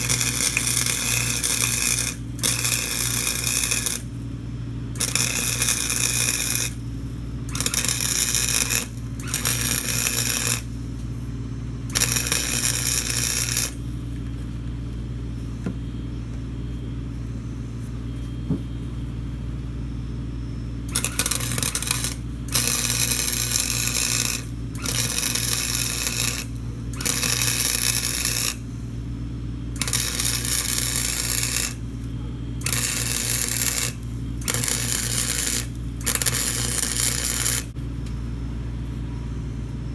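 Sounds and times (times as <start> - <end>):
arc welding crackling: 0.0 - 11.2, 11.8 - 14.2, 20.9 - 28.7, 29.8 - 37.8
steady low hum: 0.0 - 39.9.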